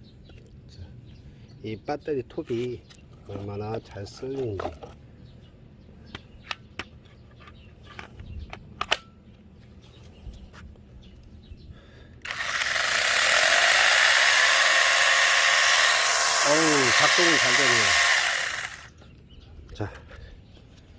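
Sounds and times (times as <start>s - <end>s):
cordless chainsaw whirring: 12.2s - 18.9s.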